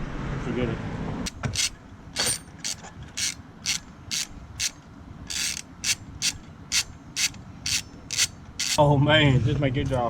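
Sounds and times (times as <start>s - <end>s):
ratchet wrench clicking: 1.3s - 8.8s.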